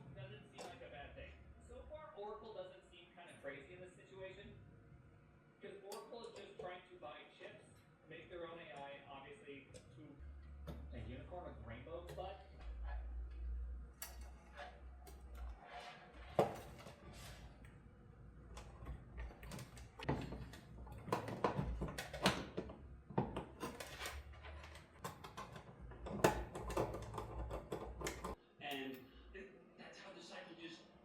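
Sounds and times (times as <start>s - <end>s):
steady low hum: 0.0s - 29.9s
hard parts knocking and clicking: 18.5s - 28.4s.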